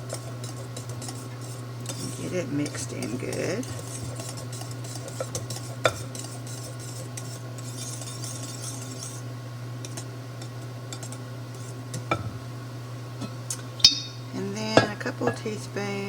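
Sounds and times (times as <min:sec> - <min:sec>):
whisk clinking against bowl: 0:00.0 - 0:09.2
whisk stirring custard: 0:00.0 - 0:12.1.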